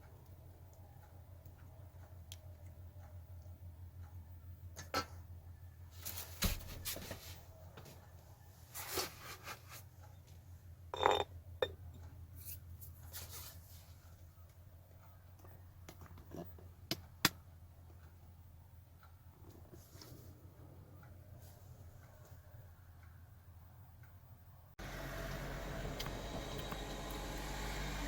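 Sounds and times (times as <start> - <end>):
dishes and utensils clinking: 11.0 - 11.8.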